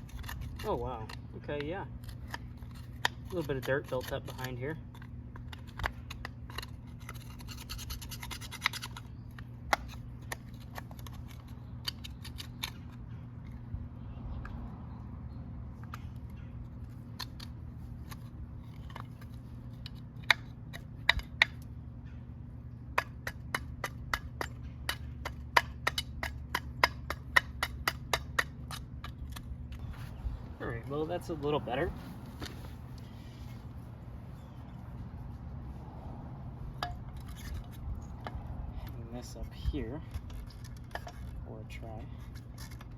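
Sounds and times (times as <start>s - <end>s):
scrubbing and scraping dirt: 0.0s - 13.6s, 27.8s - 36.2s.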